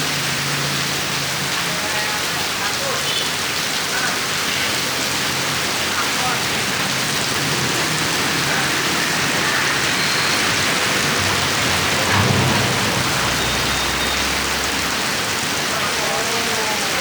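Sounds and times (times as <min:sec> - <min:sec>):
heavy rain pouring: 0:00.0 - 0:17.0
low rumble: 0:11.0 - 0:15.6.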